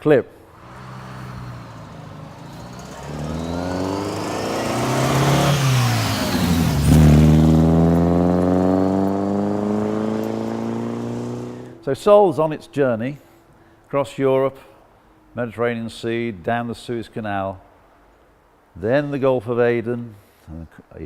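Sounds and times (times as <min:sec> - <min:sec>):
car engine accelerating: 0:00.5 - 0:11.8.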